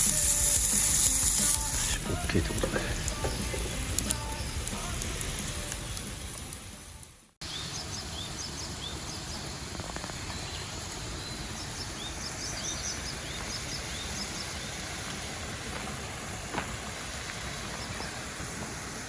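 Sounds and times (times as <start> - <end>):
steady hiss: 0.0 - 19.0
small birds chirping: 7.4 - 15.4.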